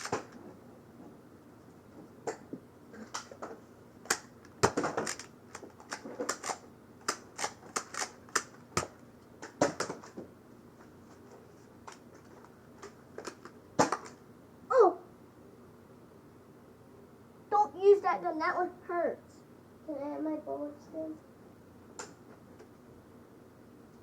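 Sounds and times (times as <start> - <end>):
plastic toy blasters clicking: 4.1 - 8.9.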